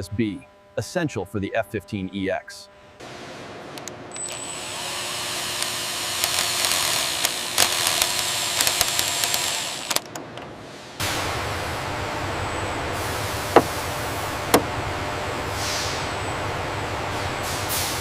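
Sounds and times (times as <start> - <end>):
steady mechanical hum: 0.0 - 18.0.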